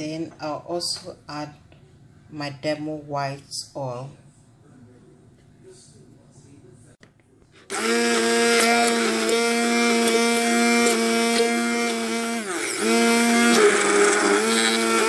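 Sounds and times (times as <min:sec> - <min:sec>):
hand blender motor whine: 0:07.7 - 0:15.0.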